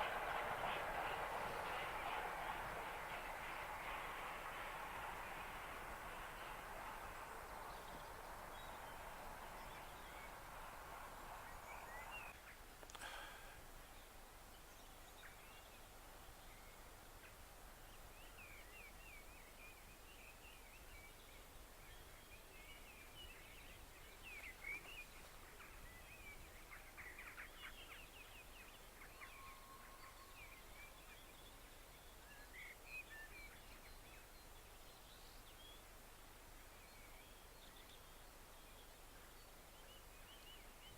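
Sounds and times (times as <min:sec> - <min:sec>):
small birds chirping: 0:06.2 - 0:13.0.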